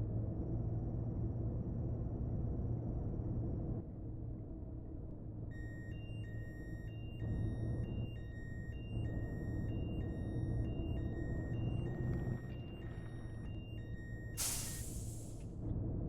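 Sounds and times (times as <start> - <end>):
two-tone electronic beep: 5.5 - 15.4.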